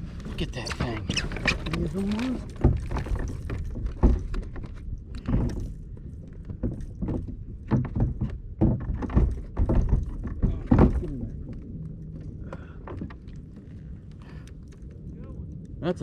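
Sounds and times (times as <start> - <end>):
thumps and knocks on a boat: 0.0 - 14.1
steady low rumble: 9.4 - 16.0.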